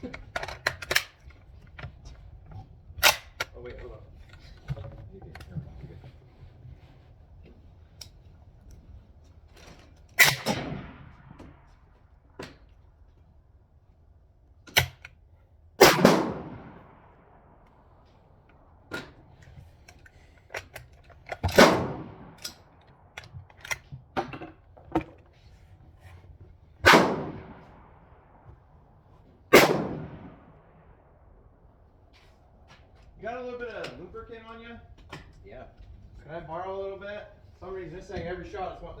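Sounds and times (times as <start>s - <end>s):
suppressed rifle shots echoing: 10.2s - 12.5s, 15.8s - 18.0s, 21.5s - 23.2s, 26.8s - 28.4s, 29.5s - 31.6s
sharp cracks and clicks: 14.7s - 15.2s.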